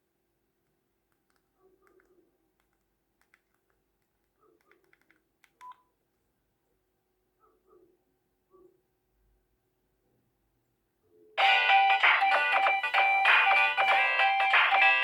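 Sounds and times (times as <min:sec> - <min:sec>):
keypad beeps: 0:05.6 - 0:05.9.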